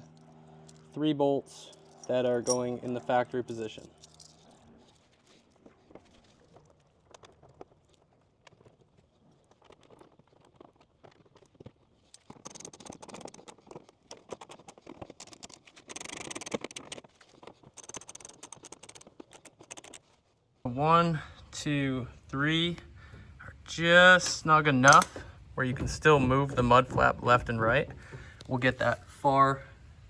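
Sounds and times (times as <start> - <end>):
metallic ticking of bolts and tools: 1.5 - 4.4, 24.2 - 25.3.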